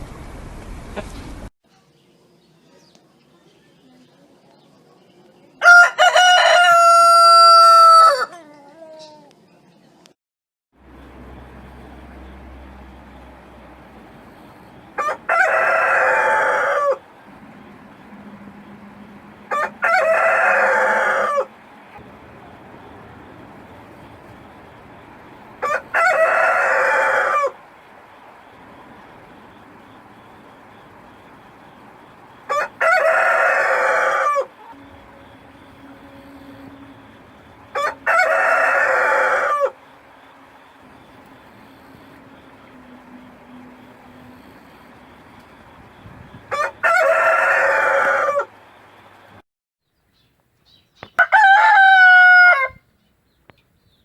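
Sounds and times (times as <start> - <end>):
rooster crowing: 5.6 - 9.3, 12.2 - 48.8, 51.1 - 52.9
steady background hiss: 10.9 - 49.4.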